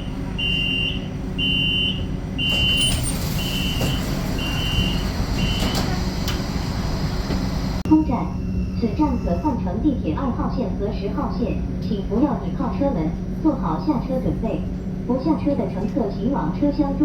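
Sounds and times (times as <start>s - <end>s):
low tram hum: 0.0s - 17.0s
high electronic door beeps: 0.4s - 6.0s.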